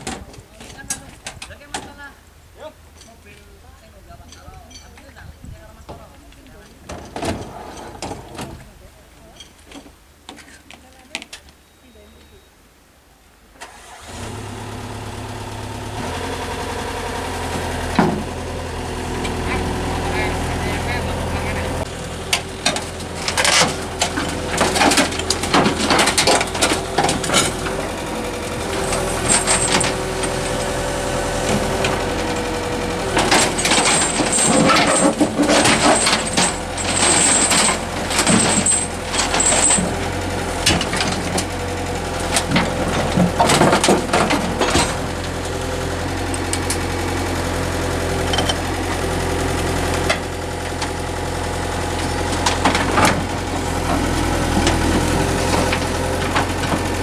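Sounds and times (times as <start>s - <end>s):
metal clanking: 2.8s - 10.4s, 15.8s - 57.0s
excavator diesel engine running: 13.6s - 57.0s.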